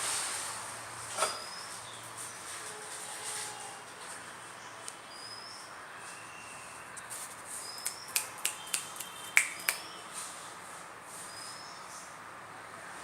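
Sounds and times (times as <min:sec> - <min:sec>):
sharp clicks: 0:07.8 - 0:09.8.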